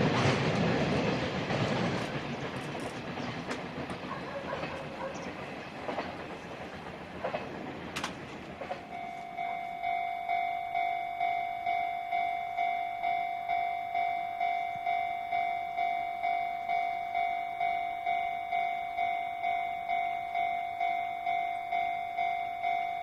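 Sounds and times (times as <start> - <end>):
train wheels clickety-clack: 0.0 - 9.6
freight train rolling past: 0.0 - 23.0
level-crossing alarm ringing: 8.7 - 23.0.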